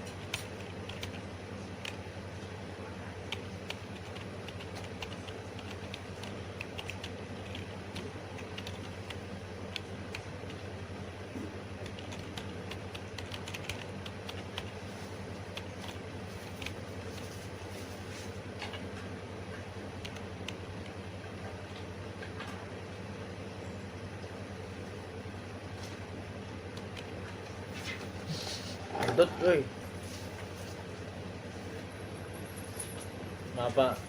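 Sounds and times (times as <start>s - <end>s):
keyboard typing: 0.0s - 2.0s, 3.3s - 10.7s, 11.8s - 17.5s, 20.0s - 21.0s
steady low hum: 0.0s - 34.0s.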